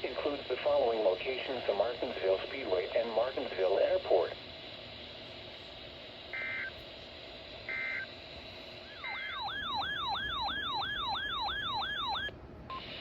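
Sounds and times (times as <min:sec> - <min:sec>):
digital data tone bursts: 0:06.3 - 0:06.8, 0:07.7 - 0:08.1
sweeping siren-like alert tone: 0:08.9 - 0:12.3.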